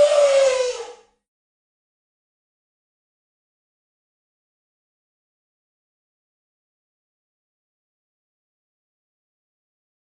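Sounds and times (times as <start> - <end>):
elephant trumpeting: 0.0 - 1.1.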